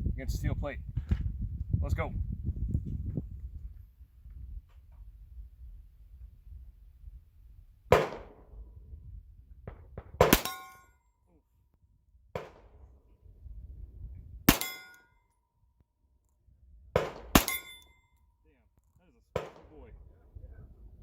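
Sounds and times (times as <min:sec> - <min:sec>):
pistol shots: 0:07.9 - 0:08.5, 0:10.0 - 0:10.8, 0:12.4 - 0:12.8, 0:14.5 - 0:15.0, 0:17.0 - 0:17.9, 0:19.4 - 0:19.8.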